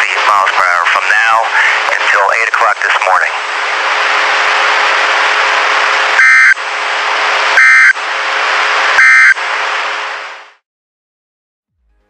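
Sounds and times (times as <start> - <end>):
radio hiss: 0.0 - 6.5
alert data tone bursts: 6.2 - 6.6.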